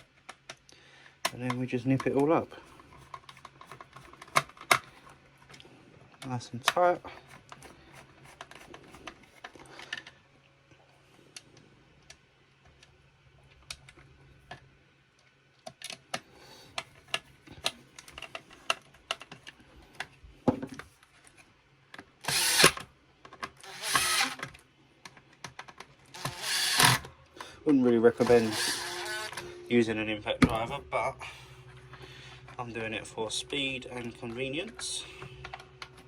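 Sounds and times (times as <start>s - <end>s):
small clicks and taps of parts: 15.2s - 22.1s, 24.4s - 26.3s
impact driver running screws: 22.2s - 22.9s, 23.6s - 24.5s, 26.1s - 27.1s, 28.1s - 29.6s.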